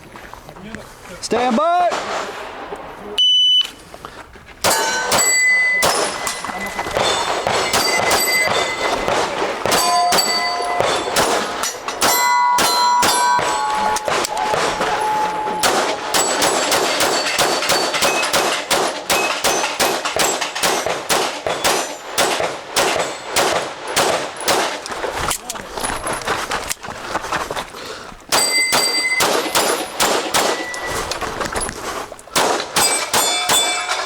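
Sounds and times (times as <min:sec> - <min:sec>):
pistol shots: 0:04.6 - 0:24.9, 0:28.3 - 0:30.9, 0:32.4 - 0:34.0
steel targets ringing: 0:04.7 - 0:20.9, 0:28.3 - 0:31.2, 0:32.7 - 0:34.0.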